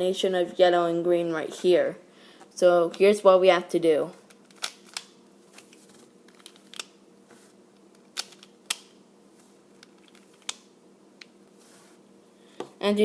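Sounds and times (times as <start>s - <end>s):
plastic puzzle clicks: 8.0s - 8.9s.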